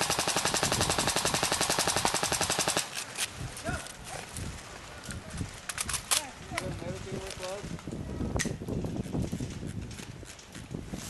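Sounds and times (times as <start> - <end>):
airsoft rifle full-auto burst: 0.0 - 3.0.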